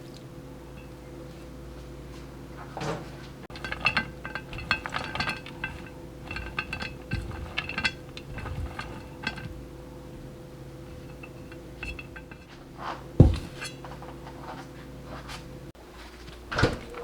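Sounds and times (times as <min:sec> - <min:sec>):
cutlery clinking on dishes: 0:03.5 - 0:09.6
low hum: 0:03.5 - 0:14.0.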